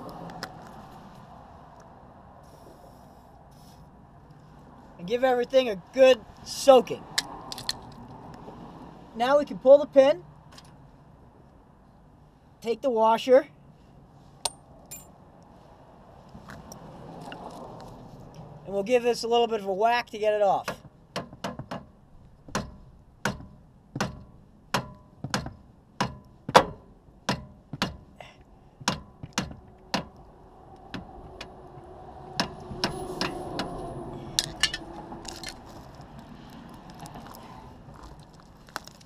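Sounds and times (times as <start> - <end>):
rubber mallet striking metal: 23.3 - 28.0.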